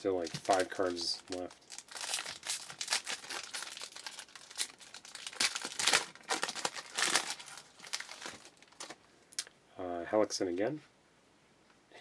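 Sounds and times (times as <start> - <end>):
foil wrapper crinkling: 0.0 - 9.0.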